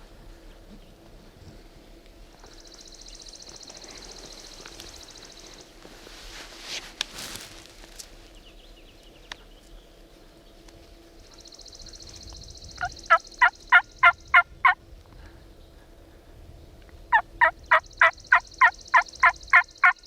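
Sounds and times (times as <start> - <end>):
turkey yelping: 12.8 - 14.8.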